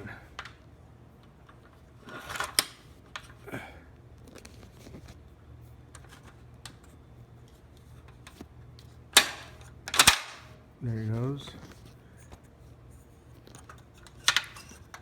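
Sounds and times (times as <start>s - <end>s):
metal ladder hinge clicks and knocks: 9.2s - 10.5s.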